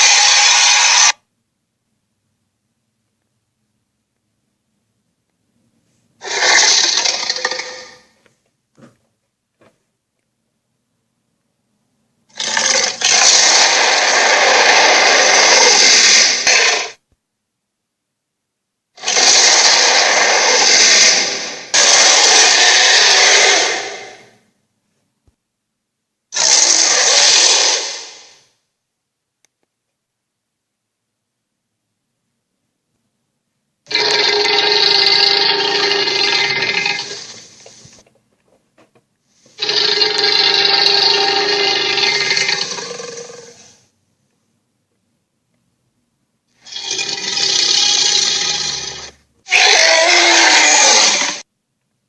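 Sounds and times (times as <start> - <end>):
giant creature roaring: 0.0 - 1.2, 6.2 - 8.0, 12.3 - 17.0, 19.0 - 24.3, 26.4 - 28.4, 33.9 - 37.5, 39.6 - 43.8, 46.6 - 51.5.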